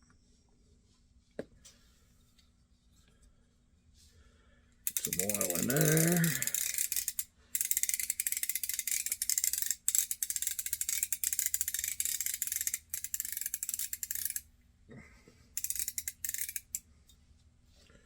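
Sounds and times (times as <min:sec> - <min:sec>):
fishing reel ratchet clicking: 0:04.9 - 0:14.5, 0:15.6 - 0:16.9.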